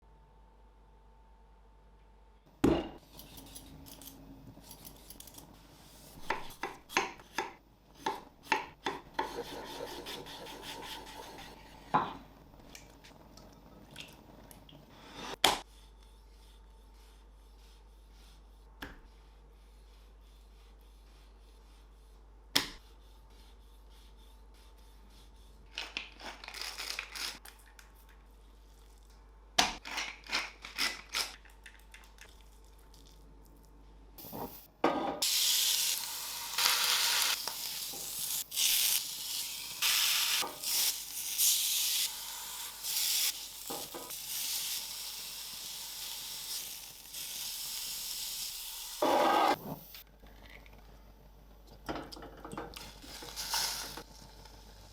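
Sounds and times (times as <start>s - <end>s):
food sizzling in hot oil: 35.2s - 49.6s, 53.0s - 54.1s.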